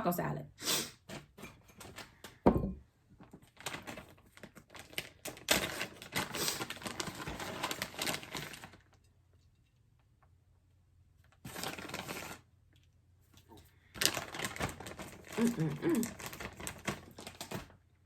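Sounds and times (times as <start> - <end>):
thump on table: 2.5 - 2.8
crunchy taco shell chewing: 14.0 - 17.7.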